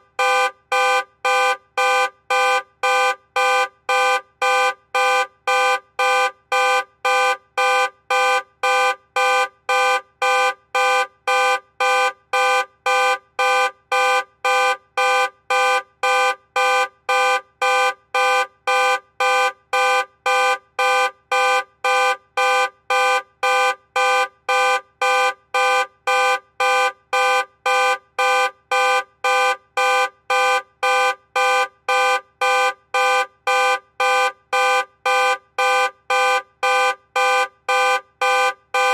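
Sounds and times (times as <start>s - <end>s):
car horn honking: 21.3s - 38.9s.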